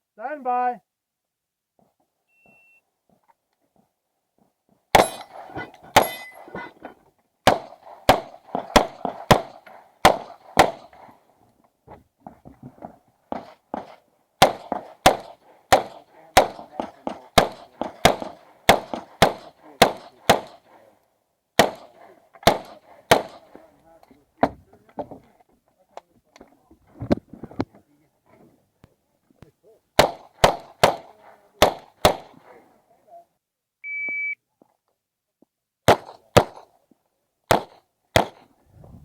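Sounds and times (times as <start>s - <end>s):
pistol shots: 4.9s - 6.7s, 7.4s - 11.2s, 13.3s - 20.8s, 21.6s - 23.6s, 30.0s - 32.6s, 35.9s - 36.8s, 37.5s - 38.5s.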